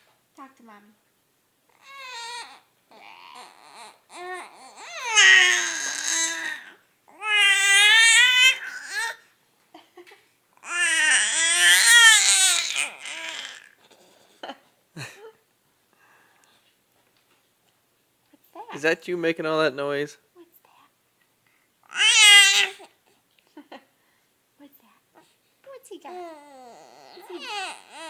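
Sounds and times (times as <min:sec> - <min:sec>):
baby babbling: 0:01.7 - 0:09.2, 0:10.6 - 0:13.8, 0:21.9 - 0:22.9, 0:26.0 - 0:28.0
baby squealing: 0:01.8 - 0:09.2, 0:10.6 - 0:13.7, 0:21.9 - 0:22.9, 0:26.1 - 0:28.0.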